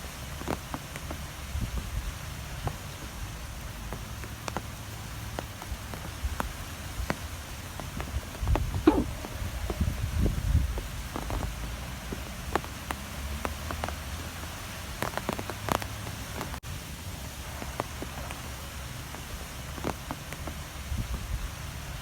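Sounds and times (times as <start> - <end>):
sharp ticks and taps: 3.8 - 9.1.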